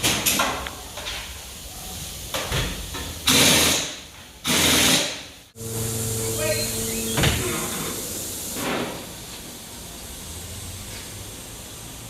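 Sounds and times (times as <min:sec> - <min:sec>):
impact wrench bursts: 0:03.2 - 0:05.3.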